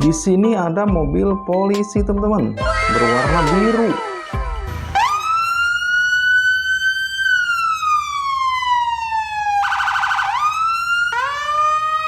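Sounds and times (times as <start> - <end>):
toy police siren wailing: 2.6 - 12.0.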